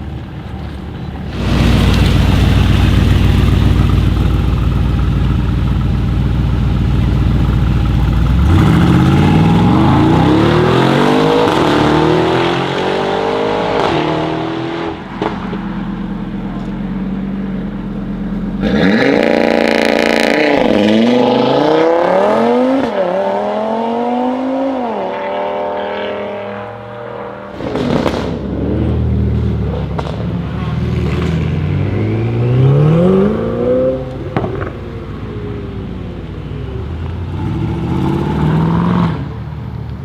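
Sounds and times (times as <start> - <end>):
exhaust crackles: 0.0 - 10.3
car engine accelerating hard: 1.2 - 15.4.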